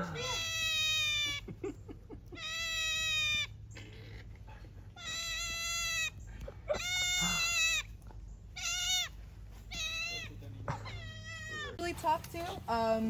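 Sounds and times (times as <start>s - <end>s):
animal meow-like calls: 0.0s - 1.4s, 5.0s - 7.9s.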